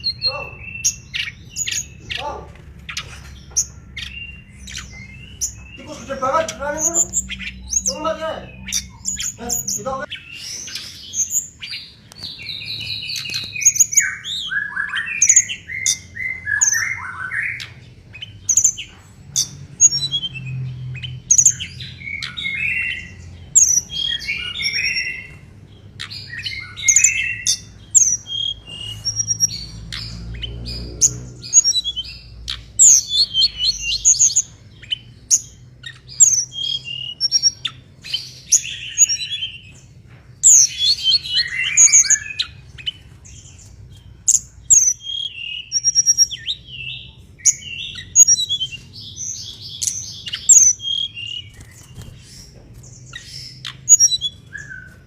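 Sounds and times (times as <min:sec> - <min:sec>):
bird singing: 0:00.0 - 0:55.0.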